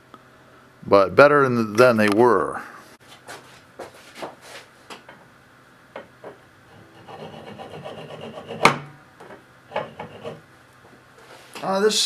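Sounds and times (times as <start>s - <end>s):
metal scraping: 6.7s - 8.9s, 9.7s - 10.5s.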